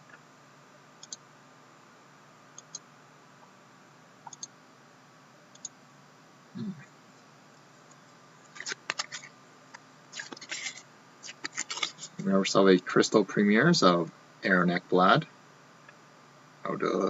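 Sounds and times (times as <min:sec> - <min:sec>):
computer mouse clicks: 0:01.0 - 0:01.2, 0:02.6 - 0:02.8, 0:04.2 - 0:04.5, 0:05.5 - 0:05.8.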